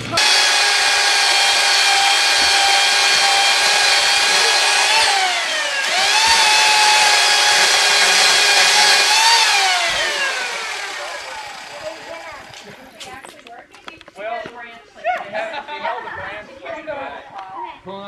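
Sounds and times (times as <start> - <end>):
chainsaw revving: 0.0 - 13.0.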